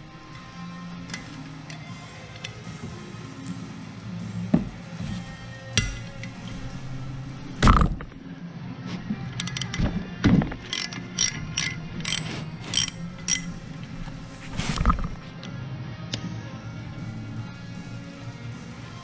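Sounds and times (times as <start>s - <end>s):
ringing metal clicks: 0.0s - 3.6s, 5.3s - 8.2s, 9.2s - 15.5s
steady low hum: 0.0s - 19.0s.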